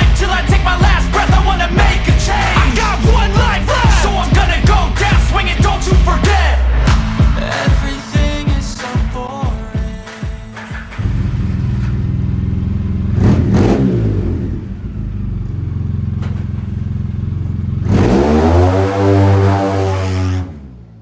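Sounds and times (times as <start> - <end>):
atv engine idling and revving: 0.0 - 7.1, 10.6 - 21.0.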